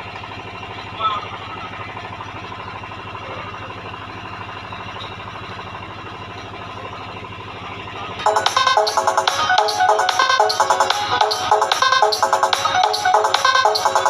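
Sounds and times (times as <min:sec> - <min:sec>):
engine idling: 0:00.0 - 0:14.0
loud electronic music: 0:08.2 - 0:14.0.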